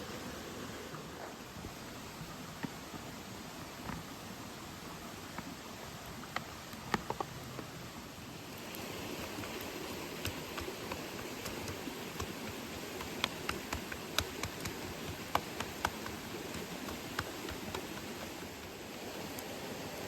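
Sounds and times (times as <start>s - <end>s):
river water: 0.0s - 20.0s
steady rain: 4.4s - 20.0s
sharp ticks and pops: 8.6s - 18.8s.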